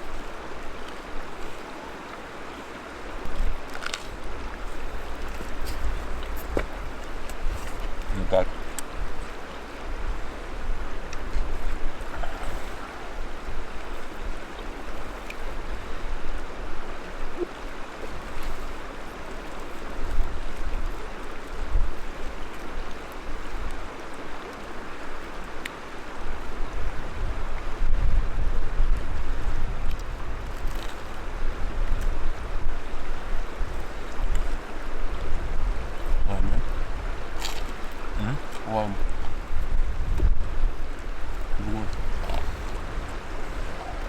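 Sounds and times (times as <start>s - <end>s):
wind buffeting microphone: 26.3s - 44.0s.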